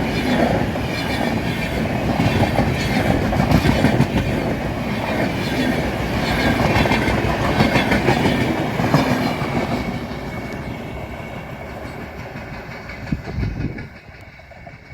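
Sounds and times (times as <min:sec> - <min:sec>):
train wheels clattering over rail joints: 0:00.0 - 0:14.9.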